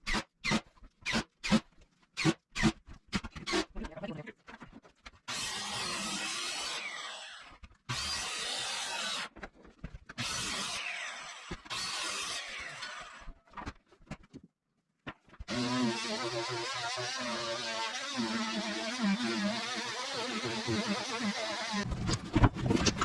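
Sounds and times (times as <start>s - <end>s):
power tool cutting wood: 5.3s - 9.3s, 10.2s - 13.3s, 15.5s - 21.9s
knocks and clatters: 21.8s - 23.0s.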